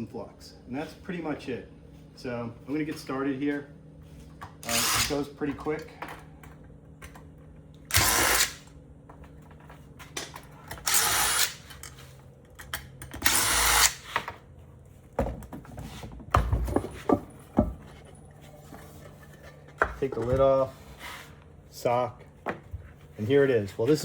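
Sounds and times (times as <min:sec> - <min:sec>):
electric screwdriver running: 0:04.6 - 0:05.2, 0:07.9 - 0:08.6, 0:10.9 - 0:11.6, 0:13.3 - 0:14.0.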